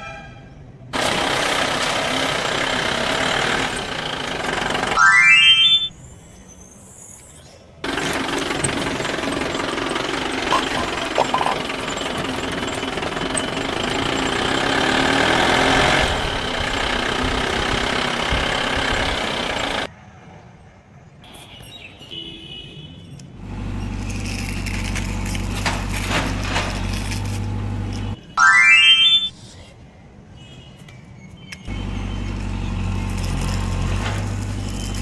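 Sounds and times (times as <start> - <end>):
heavy machinery engine noise: 1.0 - 5.2, 7.8 - 19.9, 23.4 - 28.6, 31.7 - 35.0
low engine hum: 7.9 - 19.9.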